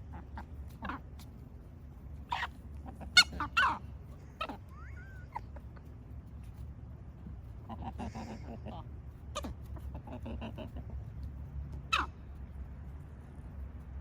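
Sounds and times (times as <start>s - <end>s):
chickens sneezing: 7.6s - 10.8s.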